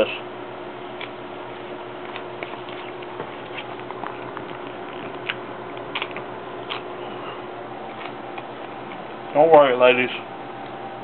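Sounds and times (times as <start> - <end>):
faint clicks and crackles: 2.0 - 6.9.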